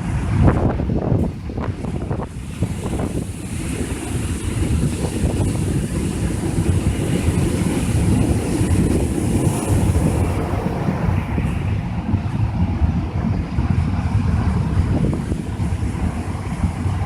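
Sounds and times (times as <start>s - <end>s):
wind buffeting microphone: 0.0s - 17.0s
ocean surf hissing: 1.8s - 17.0s.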